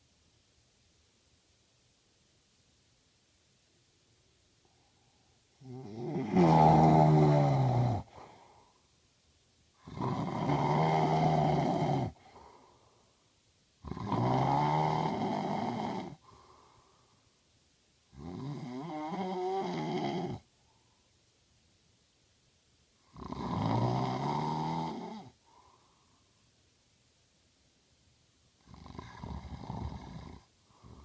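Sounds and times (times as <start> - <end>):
faint breath: 4.6 - 5.6, 8.0 - 9.0, 12.1 - 13.4, 16.1 - 17.5, 20.5 - 21.2, 25.3 - 26.6, 30.4 - 31.0
man snoring loudly: 5.6 - 8.3, 9.8 - 12.3, 13.8 - 16.2, 18.1 - 20.4, 23.1 - 25.4, 28.6 - 31.0.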